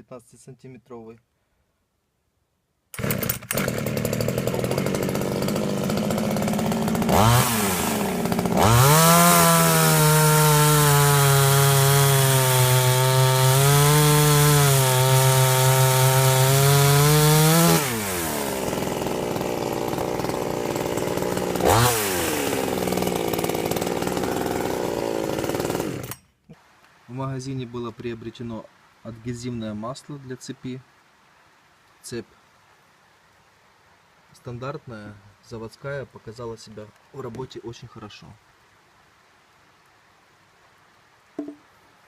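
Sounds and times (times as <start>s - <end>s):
chainsaw cutting log: 2.9s - 26.6s, 41.4s - 41.6s
chainsaw idling and revving: 3.0s - 26.2s.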